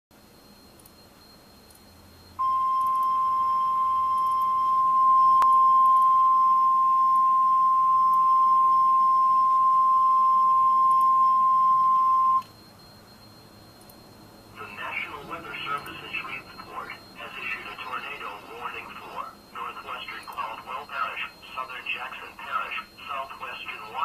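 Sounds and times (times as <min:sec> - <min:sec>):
steady warning beep tone: 0:00.2 - 0:24.0
faint radio hiss: 0:14.4 - 0:24.0.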